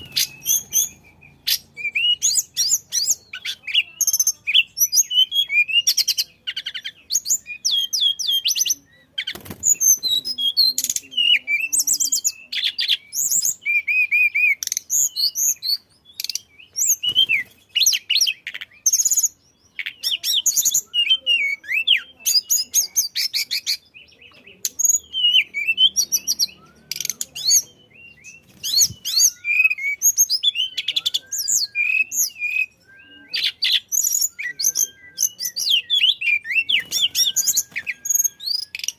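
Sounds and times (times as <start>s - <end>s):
flycatcher singing: 0.0s - 38.9s.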